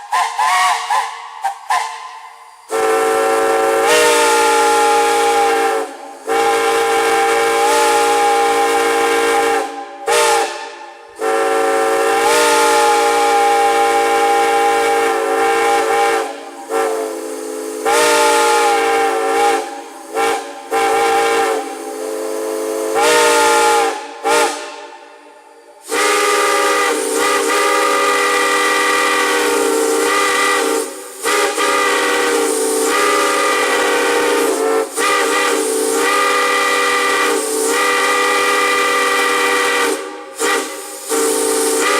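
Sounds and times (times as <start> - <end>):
chime steam whistle blasts: 0.0 - 41.9
steam hiss: 0.0 - 41.9.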